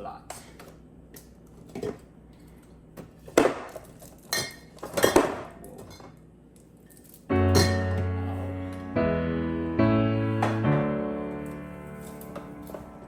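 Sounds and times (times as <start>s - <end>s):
bottles clinking and knocking: 3.4s - 6.2s, 7.5s - 8.1s
piano music: 7.3s - 13.0s.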